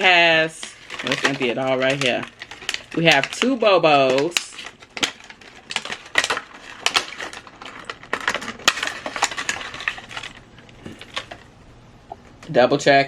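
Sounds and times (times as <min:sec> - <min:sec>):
plastic pieces clicking together: 0:00.6 - 0:11.4.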